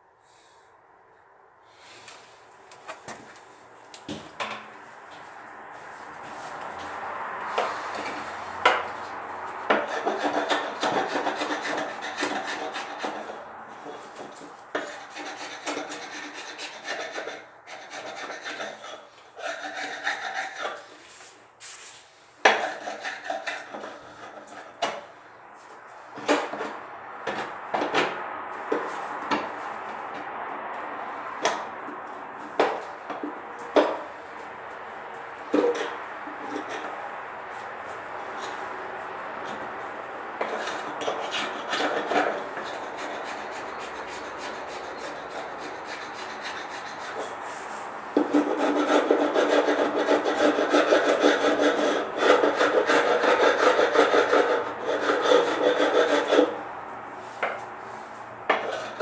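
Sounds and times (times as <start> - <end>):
scraping and rubbing: 1.8 - 25.1, 39.4 - 56.6, 57.2 - 59.0.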